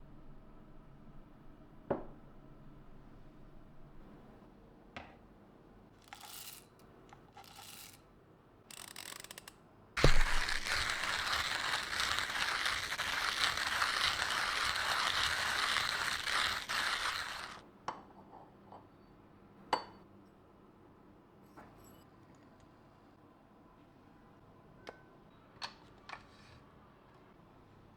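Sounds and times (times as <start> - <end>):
hand coffee grinder grinding: 10.0 - 17.6.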